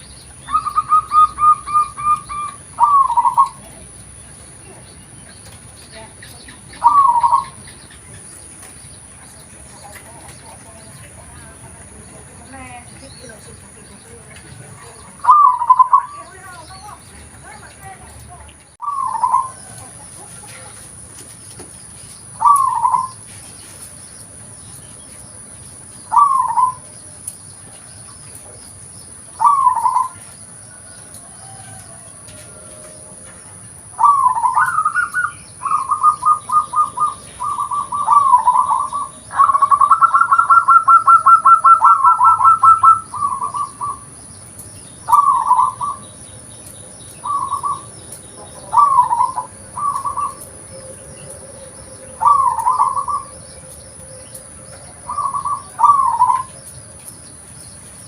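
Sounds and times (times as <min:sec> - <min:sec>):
dove cooing: 0:00.0 - 0:04.8, 0:06.0 - 0:08.2, 0:13.3 - 0:17.6, 0:18.8 - 0:21.1, 0:22.3 - 0:23.3, 0:26.1 - 0:26.9, 0:29.3 - 0:44.2, 0:45.1 - 0:46.1, 0:47.2 - 0:56.6.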